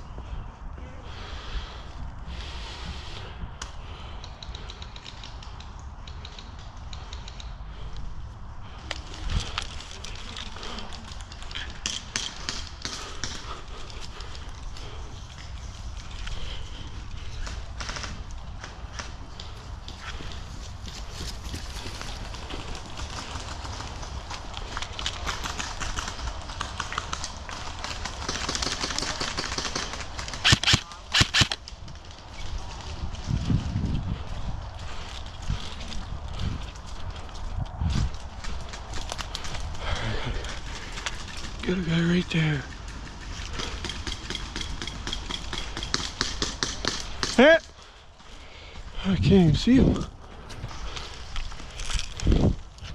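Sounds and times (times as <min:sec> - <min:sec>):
wind rumble on microphone: 0:00.0 - 0:12.1, 0:31.6 - 0:41.8, 0:48.8 - 0:52.9
airsoft gun clicks: 0:03.6 - 0:08.0, 0:28.3 - 0:31.8.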